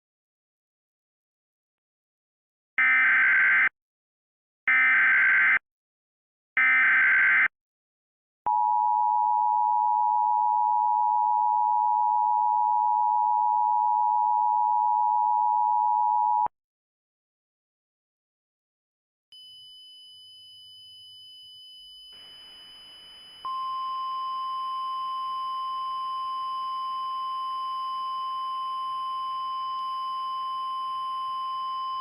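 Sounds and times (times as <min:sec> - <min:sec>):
warbling data tone bursts: 0:22.1 - 0:23.9.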